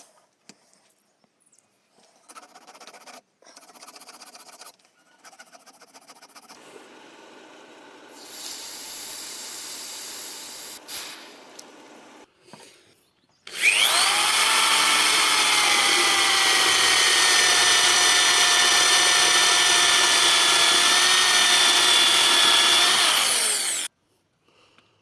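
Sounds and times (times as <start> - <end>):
electric drill whining: 13.5 - 23.9.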